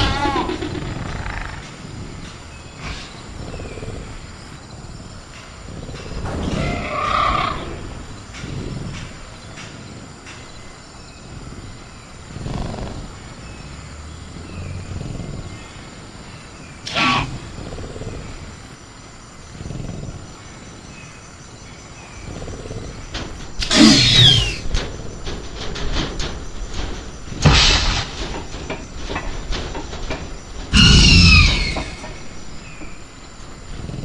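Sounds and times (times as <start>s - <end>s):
creature growls and calls: 0.0s - 1.8s, 16.9s - 18.5s, 23.6s - 24.7s
faint insect chirr: 0.0s - 34.0s
creature screech: 16.9s - 17.4s, 23.6s - 24.6s, 30.8s - 32.0s.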